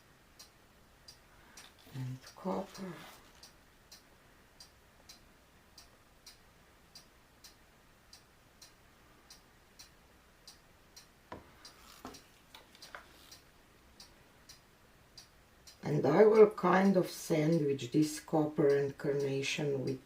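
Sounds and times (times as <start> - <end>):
faint steady ticking: 0.0 - 20.0
soft knocks and taps: 11.3 - 13.1.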